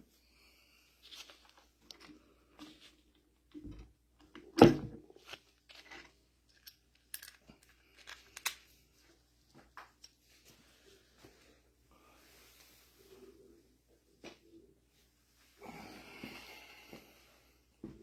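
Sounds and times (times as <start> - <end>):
hand tools and metal parts clinking: 6.5 - 8.6.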